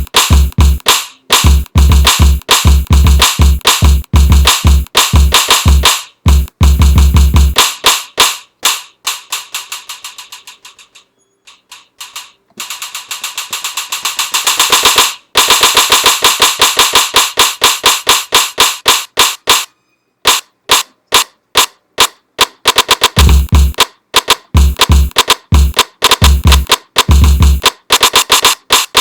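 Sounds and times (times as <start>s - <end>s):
drum sample hits: 0.0s - 10.5s, 12.0s - 19.7s, 23.0s - 29.0s.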